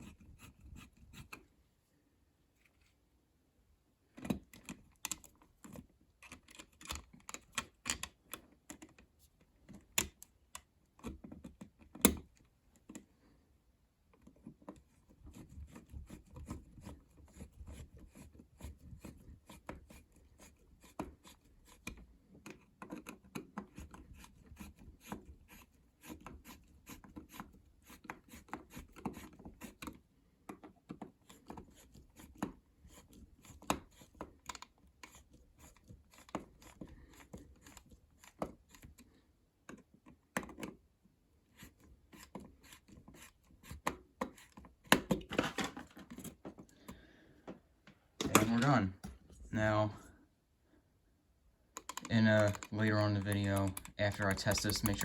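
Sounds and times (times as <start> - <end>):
scraping and rubbing: 52.1 - 55.0.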